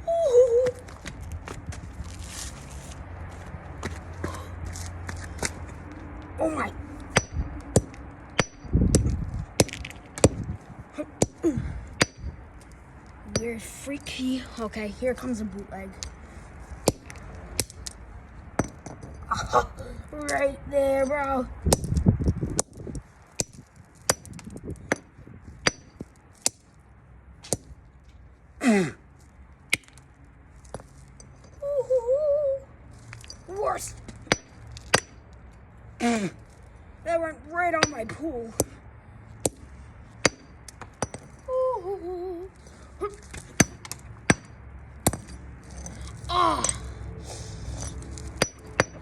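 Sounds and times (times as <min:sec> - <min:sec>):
person humming: 0:41.5 - 0:43.2.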